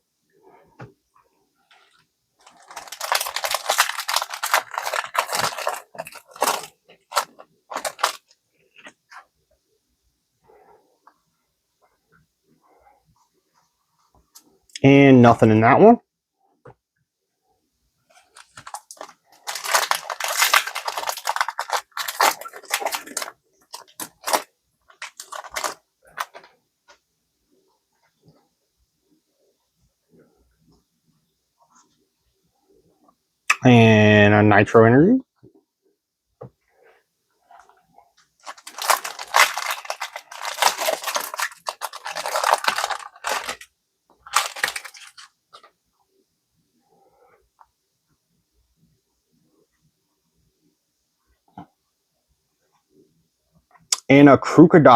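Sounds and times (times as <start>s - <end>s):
wrapper crinkling and rustling: 1.6s - 9.3s, 18.1s - 26.6s, 37.4s - 45.8s
foil wrapper tearing: 2.4s - 8.3s, 18.3s - 26.4s, 38.4s - 45.3s.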